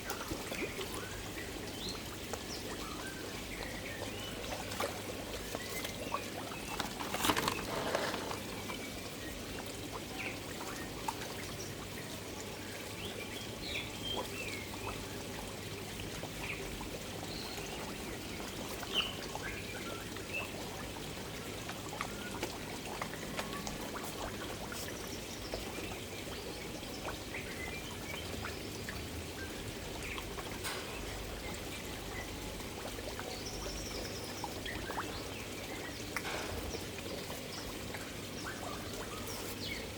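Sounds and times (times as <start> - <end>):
water pouring into pond: 0.0 - 39.9
fish splashing at surface: 4.5 - 8.8.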